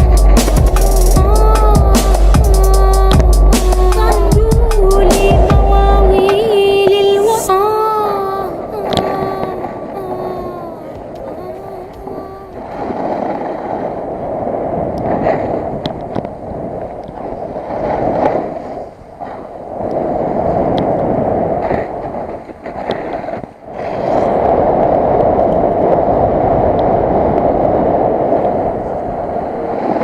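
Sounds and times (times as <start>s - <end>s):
wind rushing over microphone: 0.0s - 30.0s
skis sliding on snow: 12.1s - 30.0s.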